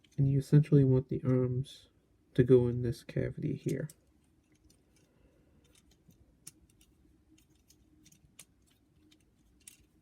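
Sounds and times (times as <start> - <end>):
plastic toy parts clicking: 3.6 - 10.0.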